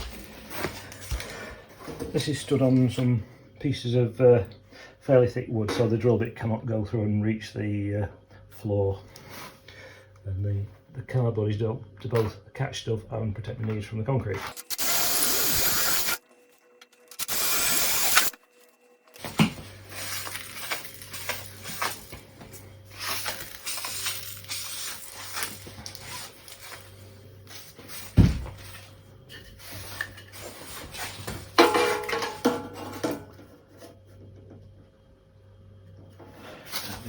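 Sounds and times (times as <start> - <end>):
power drill drilling: 14.5 - 16.2, 17.0 - 18.4.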